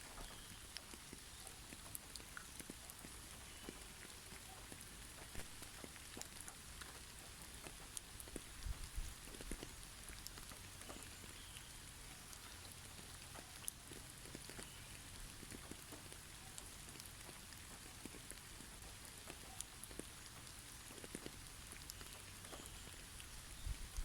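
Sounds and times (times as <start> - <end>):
snow pattering and ticking: 0.0 - 24.0
soft steady hiss: 0.0 - 24.0.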